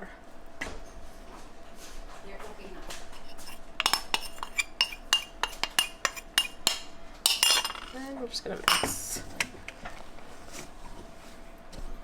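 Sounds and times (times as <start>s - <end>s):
metal spoon clinking in saucepan: 3.2s - 8.0s
soft scraping and rustling: 9.9s - 12.0s.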